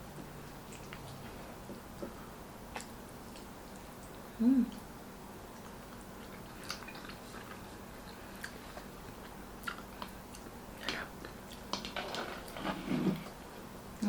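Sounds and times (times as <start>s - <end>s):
wet chewing and mouth smacks: 0.4s - 4.9s, 5.5s - 11.7s
person humming: 4.4s - 4.8s.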